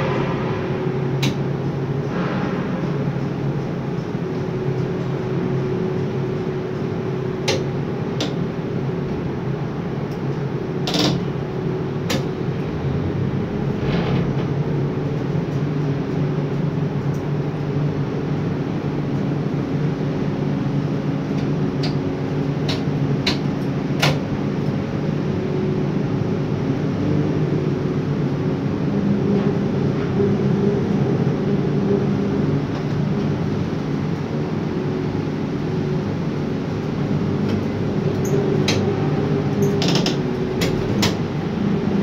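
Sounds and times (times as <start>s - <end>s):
crane machinery hum: 0.0s - 42.0s
sharp clicks and knocks: 1.2s - 1.4s, 22.6s - 24.2s.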